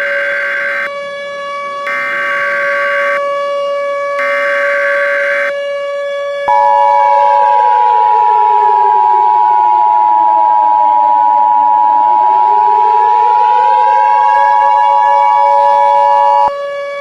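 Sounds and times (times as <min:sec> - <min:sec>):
wailing siren: 0:00.0 - 0:17.0
dual-tone alert beep: 0:06.5 - 0:07.4.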